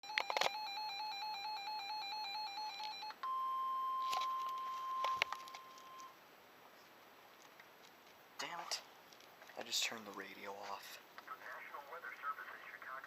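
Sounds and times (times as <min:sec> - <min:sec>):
two-pitch buzzy alarm beep: 0:00.6 - 0:06.1.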